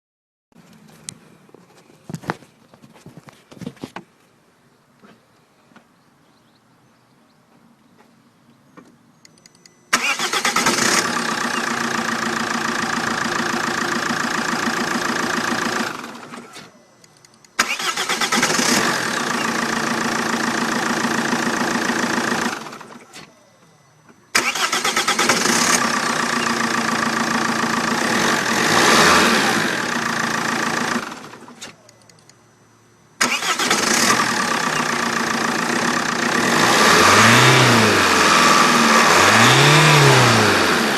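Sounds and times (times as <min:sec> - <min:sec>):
diesel car engine starting: 0:09.9 - 0:16.9, 0:17.5 - 0:32.4, 0:33.1 - 0:40.9.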